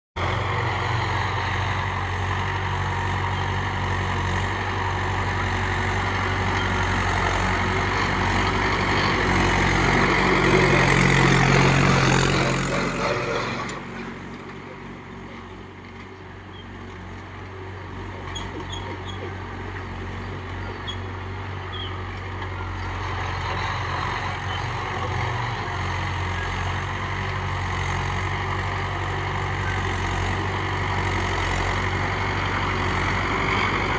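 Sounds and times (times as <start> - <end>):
tractor diesel engine running: 0.2 - 33.9.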